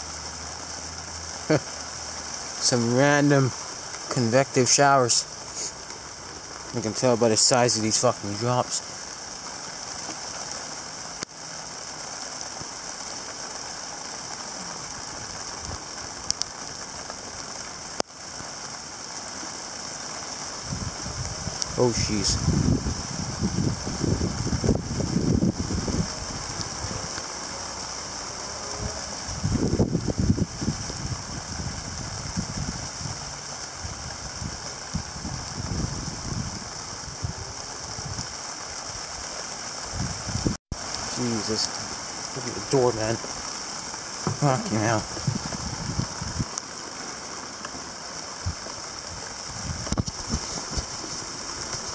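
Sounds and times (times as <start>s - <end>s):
heavy rain hissing: 0.0s - 51.9s
raindrops clicking close by: 0.0s - 51.9s
low thumps and rumbles: 45.0s - 46.5s.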